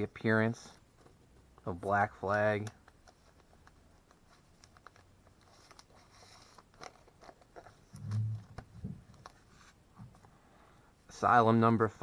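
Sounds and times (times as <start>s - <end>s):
paper and packaging crinkling: 3.0s - 8.0s.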